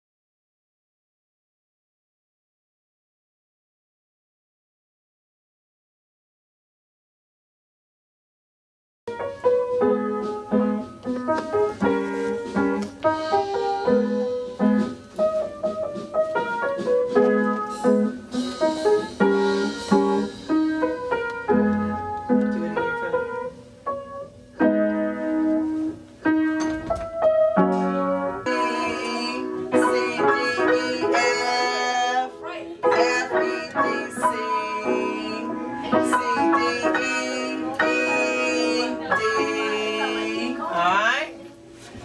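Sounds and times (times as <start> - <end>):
piano playing chords and notes: 9.1 - 41.8.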